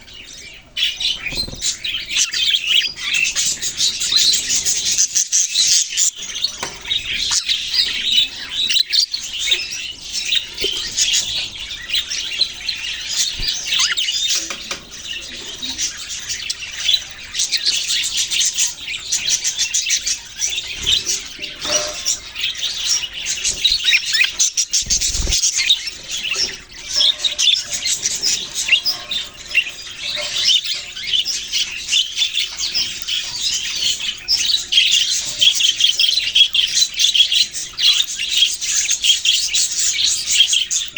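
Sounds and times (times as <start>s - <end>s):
budgerigars chattering and warbling: 0.0s - 40.9s.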